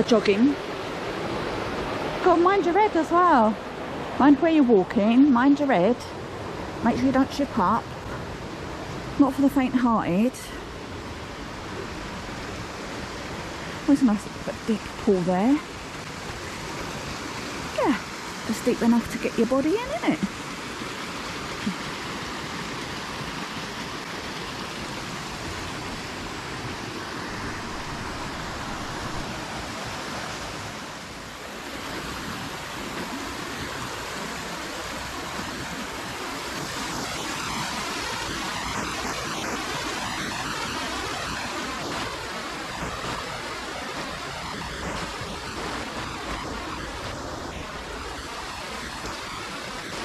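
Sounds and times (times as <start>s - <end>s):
waterfall and stream rushing: 0.0s - 50.0s.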